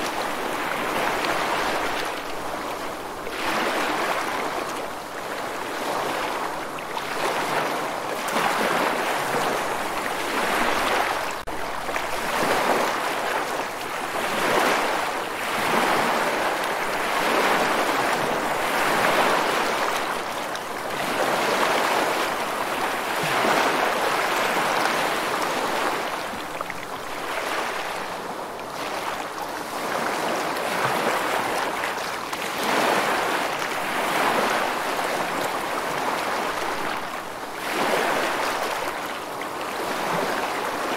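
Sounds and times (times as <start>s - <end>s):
waves breaking: 0.0s - 40.9s.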